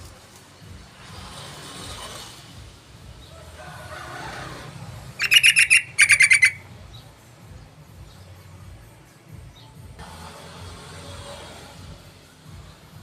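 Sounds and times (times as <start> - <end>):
bird chattering calls: 5.2 - 6.6.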